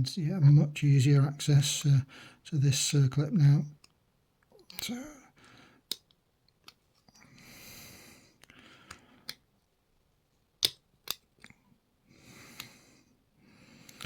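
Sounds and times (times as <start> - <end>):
soft breaths: 1.8 - 2.6, 4.6 - 6.0, 7.0 - 9.5, 11.4 - 14.0.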